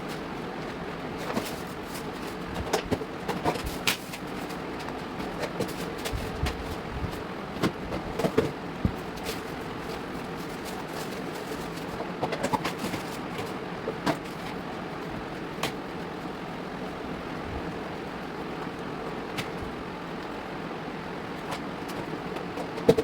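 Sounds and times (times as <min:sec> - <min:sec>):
steady background hum: 0:00.0 - 0:23.0
containers clicking on fridge shelves: 0:07.6 - 0:14.6, 0:21.4 - 0:23.0.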